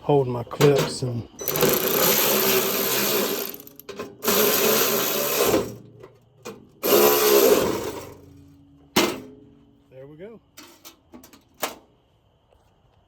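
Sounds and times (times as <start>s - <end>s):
small power tool bursts: 1.4s - 5.8s, 6.8s - 8.2s.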